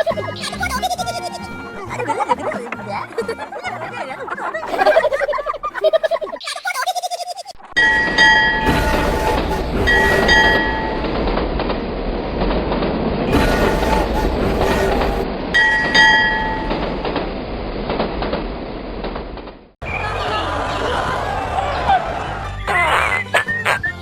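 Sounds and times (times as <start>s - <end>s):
train rumbling along track: 0.0s - 6.2s, 7.7s - 22.1s
train horn blasts: 7.8s - 11.2s, 13.3s - 17.0s.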